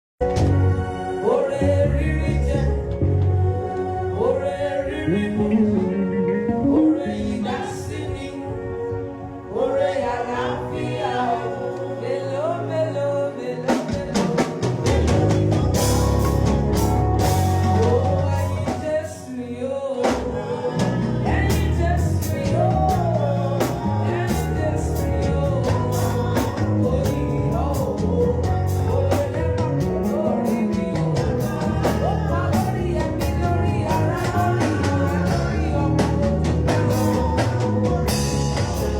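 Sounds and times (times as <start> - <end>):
live band playing: 0.2 - 38.9
person singing: 0.3 - 38.9
drum kit beat: 13.7 - 19.1, 20.1 - 38.9.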